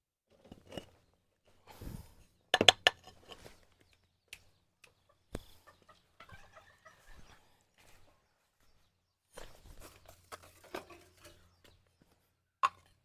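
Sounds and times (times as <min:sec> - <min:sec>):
chickens clucking softly: 0:03.8 - 0:08.9.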